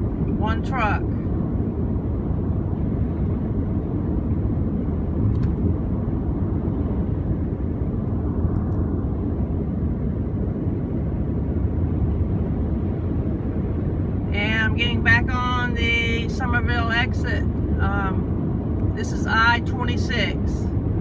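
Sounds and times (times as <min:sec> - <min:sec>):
car tyres and engine rumble: 0:00.0 - 0:21.0.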